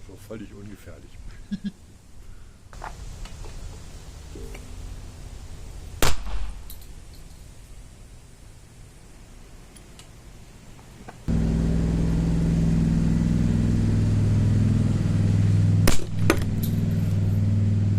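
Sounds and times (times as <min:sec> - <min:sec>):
loud electrical hum: 0:02.8 - 0:09.5, 0:11.0 - 0:17.9
capacitor bursting cracks: 0:06.0 - 0:06.7, 0:15.8 - 0:16.6.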